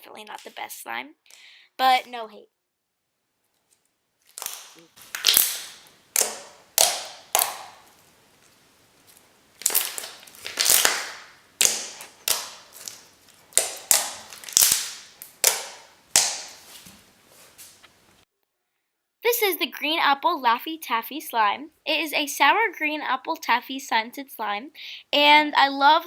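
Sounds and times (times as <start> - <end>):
slime popping and squelching: 4.2 - 16.8.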